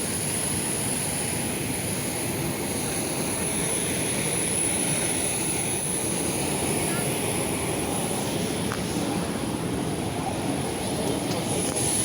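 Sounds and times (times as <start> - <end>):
jet engines rushing: 0.0 - 12.0.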